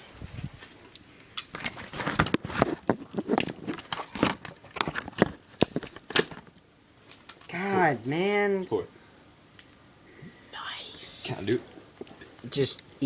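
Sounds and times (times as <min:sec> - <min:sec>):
hard plastic cracking and clicking: 0:01.4 - 0:07.5.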